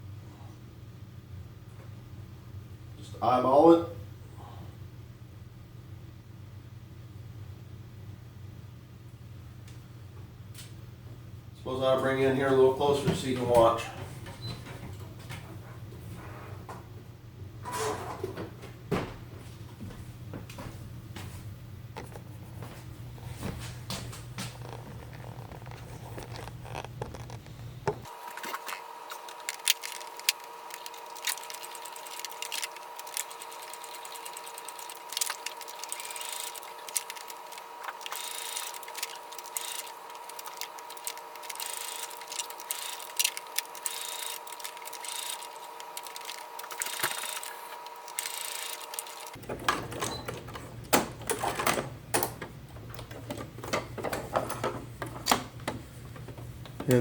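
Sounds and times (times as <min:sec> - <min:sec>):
steady hum: 0:18.6 - 0:57.0
sewing machine needle clatter: 0:29.4 - 0:55.4.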